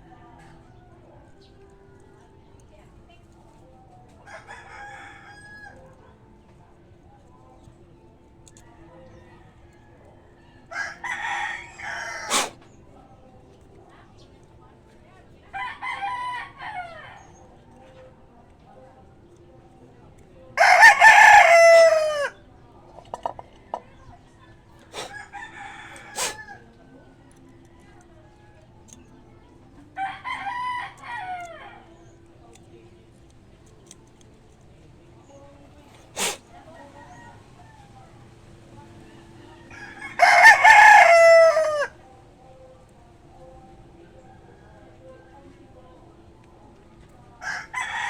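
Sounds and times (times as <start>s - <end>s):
rooster crowing: 4.3s - 5.8s, 9.0s - 12.6s, 20.6s - 22.4s, 39.4s - 42.0s, 47.4s - 48.0s.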